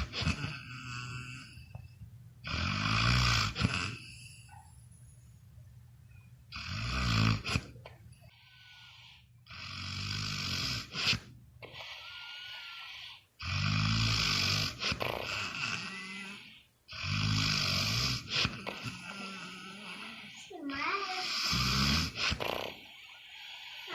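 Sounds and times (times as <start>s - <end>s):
loud fluttering snores: 6.6s - 7.7s, 11.8s - 23.9s
soft breaths: 7.4s - 9.5s, 10.8s - 13.5s, 17.6s - 23.9s.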